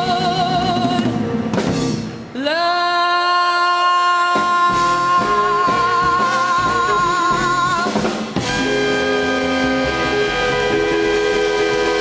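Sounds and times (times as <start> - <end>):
person singing with vibrato: 0.0 - 1.2, 2.3 - 12.0
drums: 0.0 - 12.0
guitar: 5.2 - 12.0.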